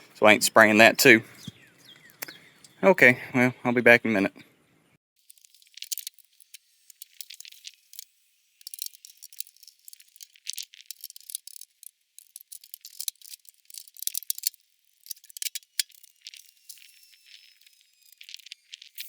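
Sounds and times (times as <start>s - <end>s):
small hard objects rattling: 5.2s - 19.0s.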